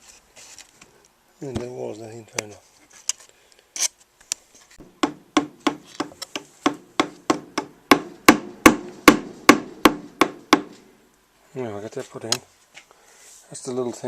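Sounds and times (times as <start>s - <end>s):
hammer blows on wood: 4.8s - 10.9s.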